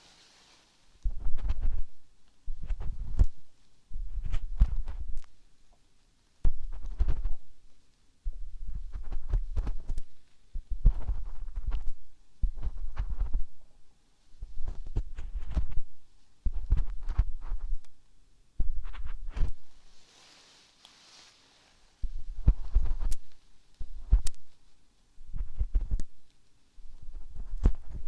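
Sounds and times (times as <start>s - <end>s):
ear cleaning scratching and rubbing: 1.1s - 5.3s, 6.5s - 7.5s, 8.5s - 13.5s, 16.5s - 17.8s, 18.7s - 21.4s, 22.0s - 24.6s, 25.2s - 26.3s, 26.9s - 28.0s.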